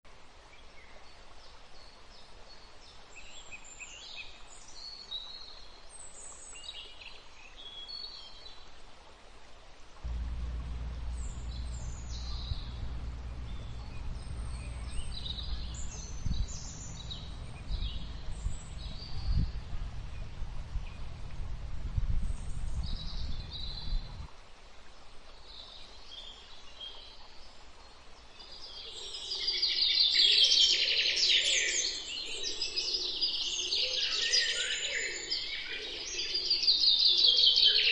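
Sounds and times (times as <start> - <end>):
low rumble: 10.0 - 24.3
small birds chirping: 10.1 - 24.3.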